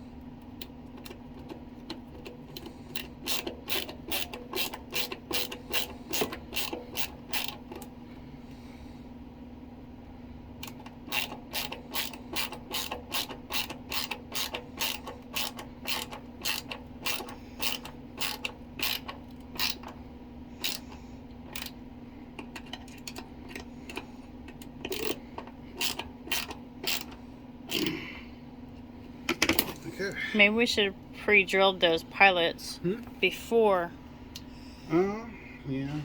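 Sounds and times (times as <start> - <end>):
steady low hum: 0.0 - 36.0
ratcheting screwdriver clicking: 2.6 - 7.8, 10.6 - 20.0, 20.6 - 20.9, 21.5 - 21.8, 22.4 - 25.2, 25.8 - 27.2.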